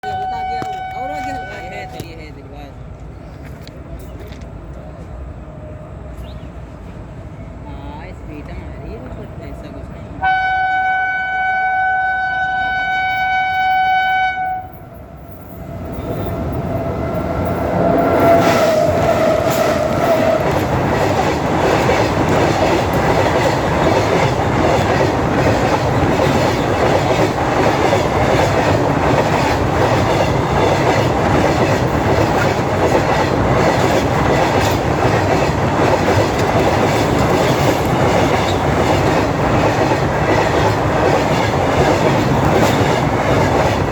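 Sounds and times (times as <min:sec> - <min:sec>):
train horn blast: 0:00.0 - 0:02.1, 0:10.2 - 0:14.8
train rumbling: 0:00.0 - 0:43.9
wheels clacking over rail joints: 0:15.6 - 0:43.9.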